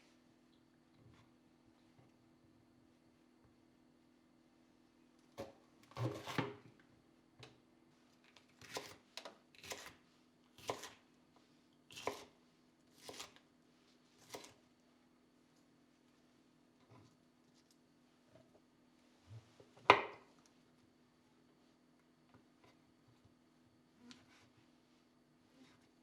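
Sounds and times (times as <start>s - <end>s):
knife chopping on cutting board: 8.6s - 9.0s, 10.6s - 11.0s, 11.9s - 12.3s, 13.0s - 13.4s.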